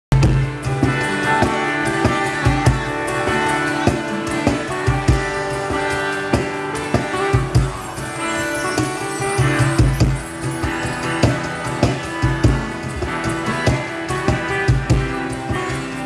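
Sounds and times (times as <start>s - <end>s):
bass: 0.1s - 16.0s
guitar: 0.1s - 16.0s
drum beat: 3.9s - 15.2s.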